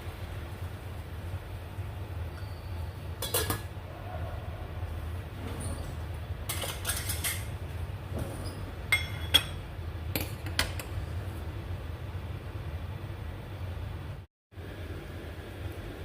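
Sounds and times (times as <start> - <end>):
metal kitchenware clinking: 3.2 - 3.7, 5.6 - 7.6, 8.4 - 10.8.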